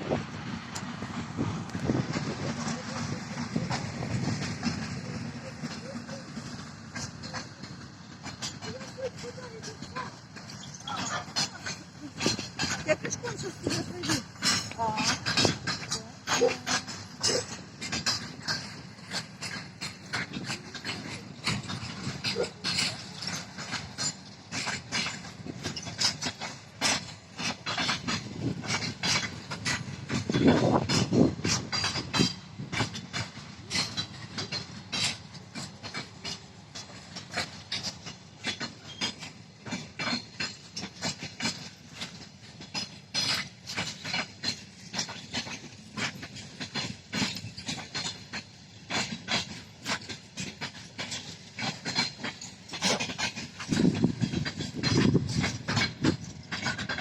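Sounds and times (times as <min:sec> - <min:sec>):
train rumble: 0:00.0 - 0:57.0
train wheels clicking over rails: 0:00.0 - 0:57.0.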